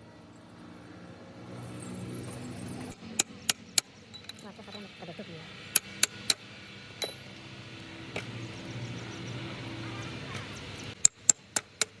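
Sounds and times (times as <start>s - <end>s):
tools clinking on metal: 1.8s - 4.9s, 7.0s - 7.4s.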